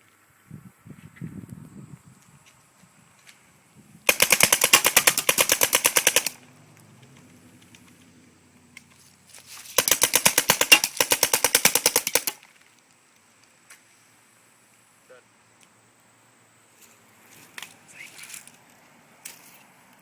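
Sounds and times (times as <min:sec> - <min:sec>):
paintball marker rapid shots: 0:04.1 - 0:06.4, 0:09.8 - 0:12.4.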